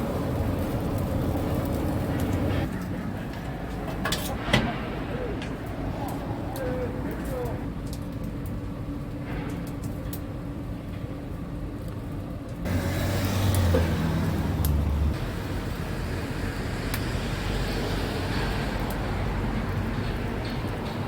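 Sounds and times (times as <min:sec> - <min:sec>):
vehicle road noise hum: 0:00.0 - 0:07.6, 0:12.6 - 0:21.0
traffic wash: 0:00.0 - 0:21.0
deep engine drone: 0:12.6 - 0:19.3.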